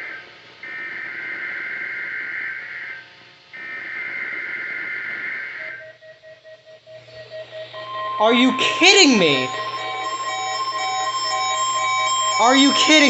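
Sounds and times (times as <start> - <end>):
buzzy data bursts: 7.2 - 13.0.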